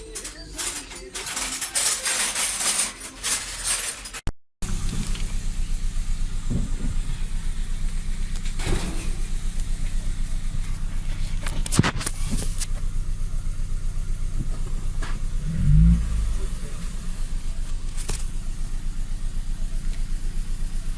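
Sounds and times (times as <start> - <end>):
car engine idling: 4.6 - 20.9.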